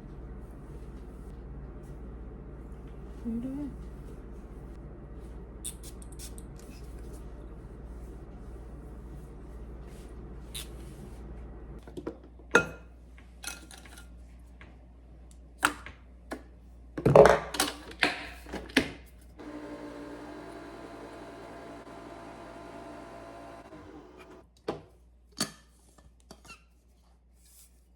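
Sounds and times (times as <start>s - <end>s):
room hum: 0.0s - 13.3s, 19.1s - 24.4s.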